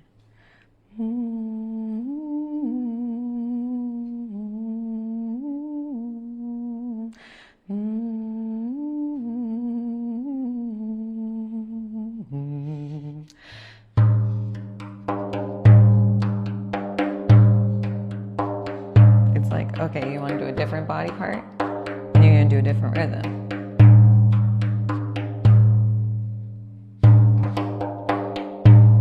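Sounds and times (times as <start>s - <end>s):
woman humming a melody: 0.9s - 13.4s
frame drum boom: 13.9s - 29.0s.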